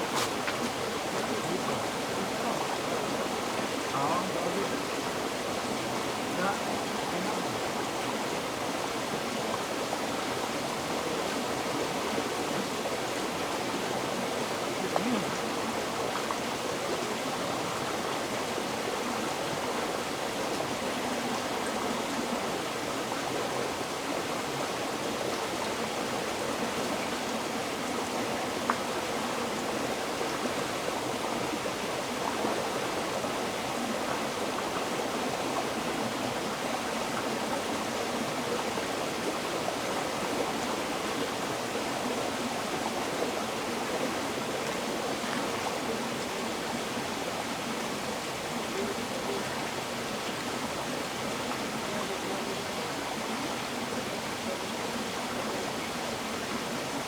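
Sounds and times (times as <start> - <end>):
river water flowing: 0.0 - 57.0.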